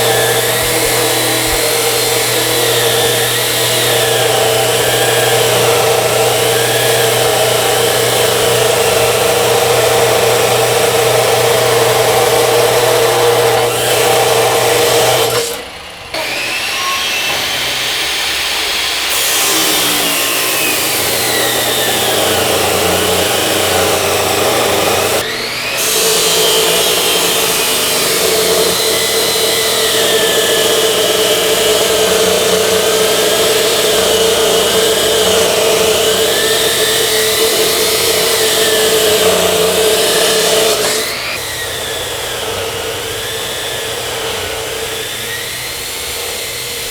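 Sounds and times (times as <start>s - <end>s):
circular saw cutting metal: 0.0s - 46.9s.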